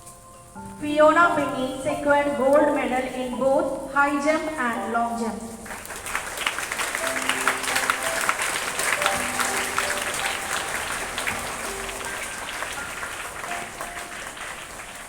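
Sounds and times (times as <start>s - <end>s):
held musical notes: 0.0s - 15.0s
crowd clapping: 5.5s - 15.0s.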